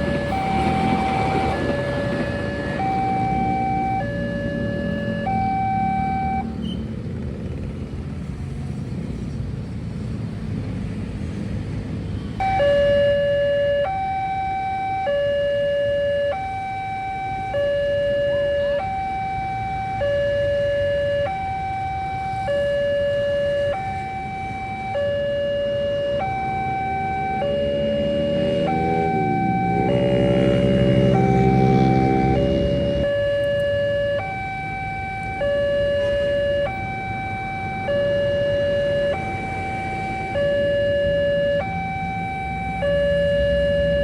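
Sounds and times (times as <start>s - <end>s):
level-crossing two-tone alarm: 0.0s - 6.6s, 12.4s - 44.0s
low rumble of vehicles: 0.0s - 44.0s.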